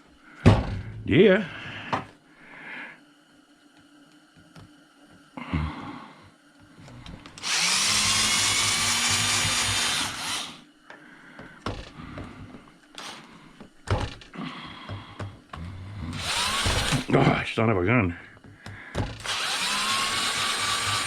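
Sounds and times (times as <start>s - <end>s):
power drill running: 7.4s - 10.6s, 13.0s - 13.3s, 16.1s - 17.1s, 19.0s - 21.0s.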